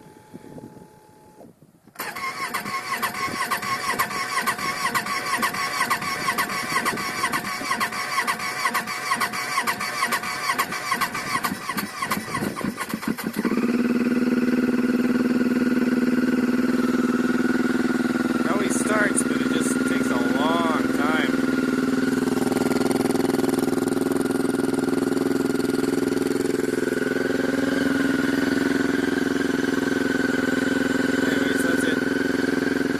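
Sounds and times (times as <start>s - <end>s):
snowmobile starter cranking: 2.0s - 13.8s
snowmobile engine running: 16.5s - 32.9s.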